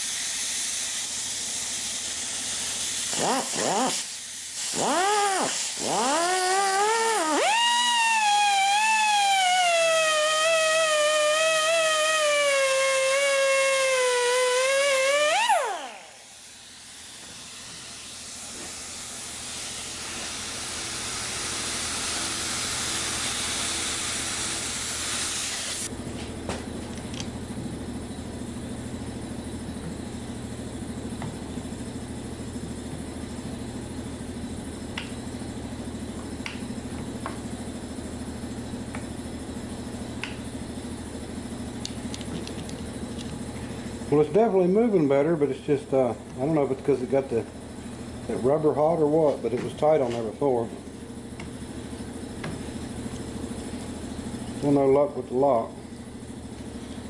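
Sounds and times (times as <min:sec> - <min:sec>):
air-powered cutting tool whining: 0:00.0 - 0:26.0.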